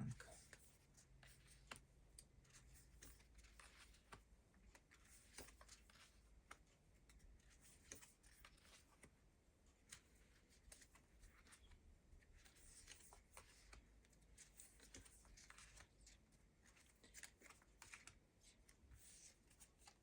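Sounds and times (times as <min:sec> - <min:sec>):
cards being shuffled: 0:02.5 - 0:06.6, 0:12.4 - 0:20.0.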